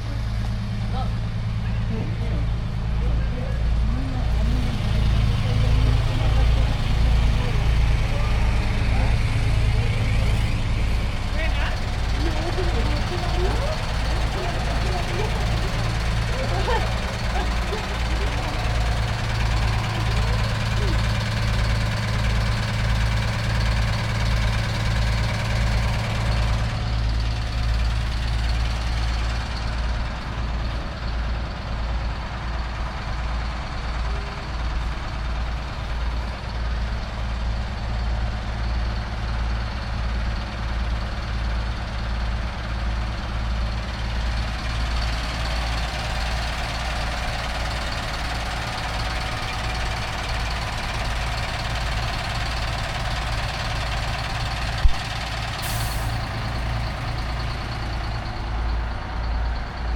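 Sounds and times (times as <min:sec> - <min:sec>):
large engine idling: 0:00.0 - 0:59.9.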